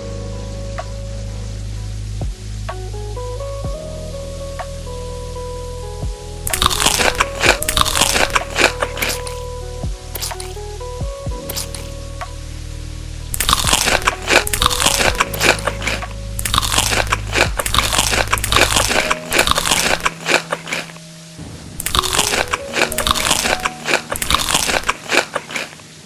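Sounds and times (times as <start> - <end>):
background music: 0.0 - 26.0
crunchy food being chewed: 6.5 - 9.4, 10.2 - 10.5, 11.5 - 11.9, 13.4 - 21.0, 21.8 - 25.9.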